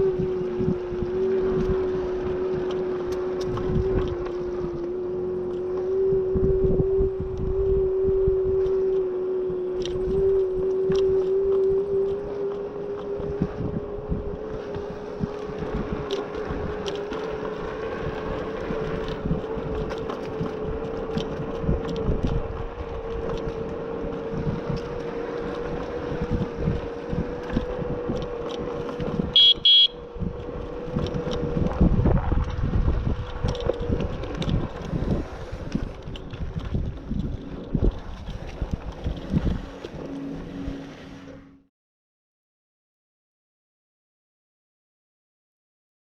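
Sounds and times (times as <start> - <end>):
wind and road rumble: 0.0 - 41.7
short high beep: 29.4 - 30.0.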